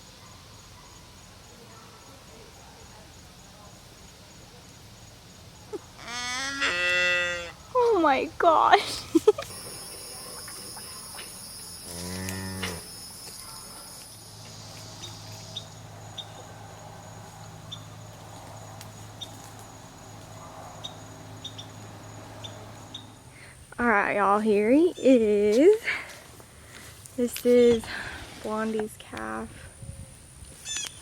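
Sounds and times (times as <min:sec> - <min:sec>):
cow mooing: 0:06.0 - 0:07.6, 0:11.8 - 0:12.9.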